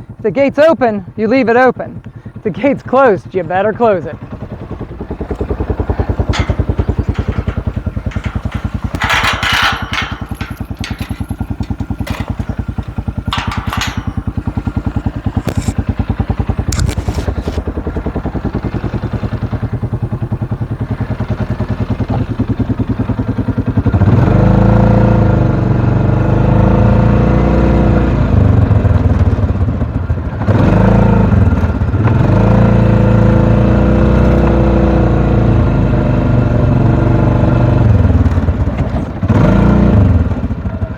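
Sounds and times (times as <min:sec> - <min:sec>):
small engine running: 0:00.0 - 0:40.9
rattling clatter: 0:02.7 - 0:24.2.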